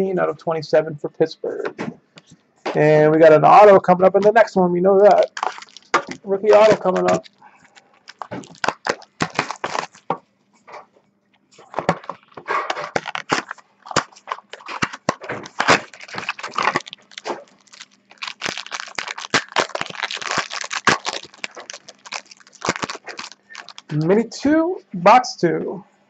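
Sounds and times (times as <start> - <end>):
card packaging crinkling: 5.1 - 10.2, 11.6 - 24.1.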